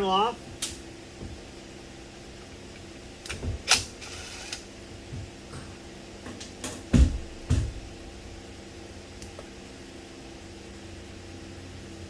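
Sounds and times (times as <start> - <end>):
heavy thumps: 6.7 - 8.0.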